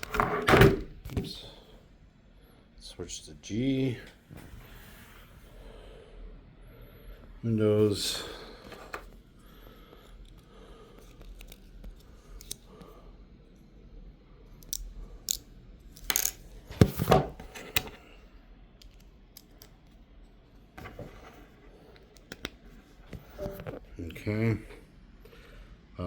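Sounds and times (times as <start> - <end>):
plastic parts clicking: 11.0 - 12.6, 14.6 - 18.0, 18.8 - 19.9.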